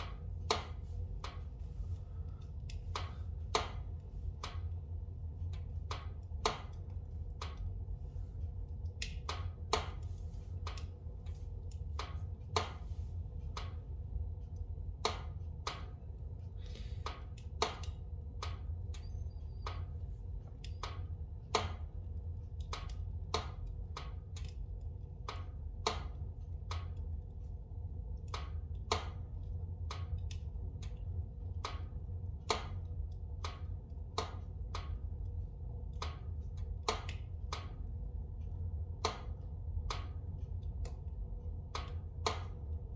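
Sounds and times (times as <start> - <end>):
fire crackling and popping: 0.0 - 7.8, 8.8 - 13.9
low fire rumble: 0.0 - 42.9.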